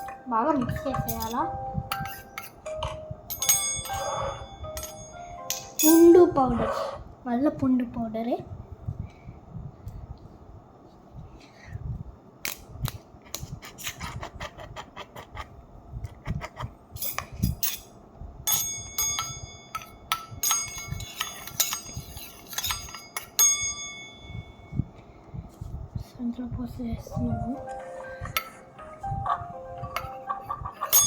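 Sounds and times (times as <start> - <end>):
spoon clinking against bowl: 0.0 - 6.2, 18.5 - 24.4, 29.9 - 31.0.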